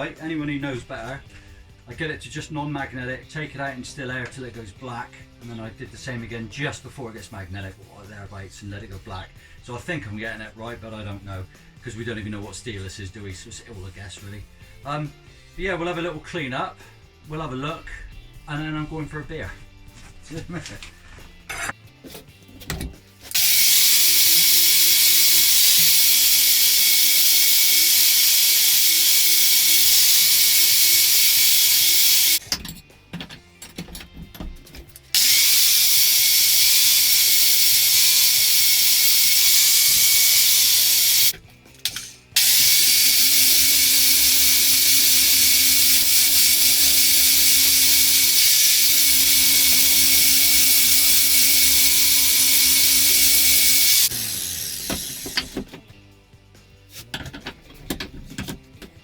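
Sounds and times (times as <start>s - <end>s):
power grinder on steel: 23.3s - 32.4s, 35.2s - 55.7s.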